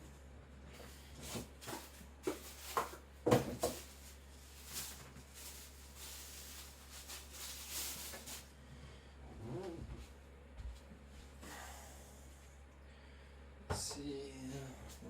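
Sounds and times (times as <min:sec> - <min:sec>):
faint low hum: 0:00.0 - 0:15.0
objects knocking and clunking: 0:01.3 - 0:04.0.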